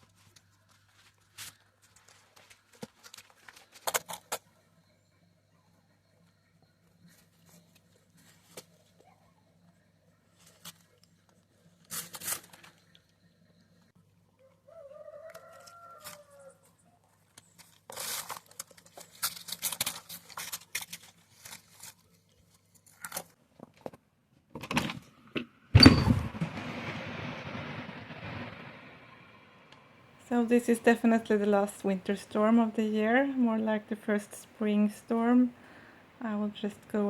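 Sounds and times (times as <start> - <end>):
scratching and rustling: 0.0 - 4.5, 10.3 - 12.9, 15.5 - 24.0
loud thump: 25.8 - 28.6.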